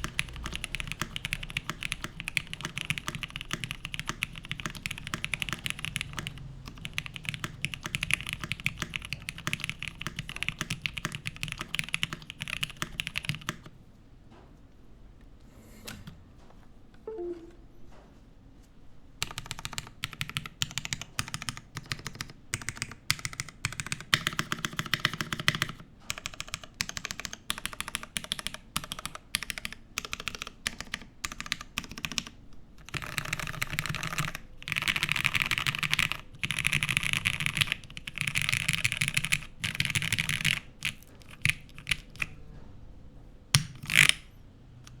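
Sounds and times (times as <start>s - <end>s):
mechanical keyboard typing: 0.0s - 13.7s, 19.2s - 42.4s, 43.6s - 44.3s.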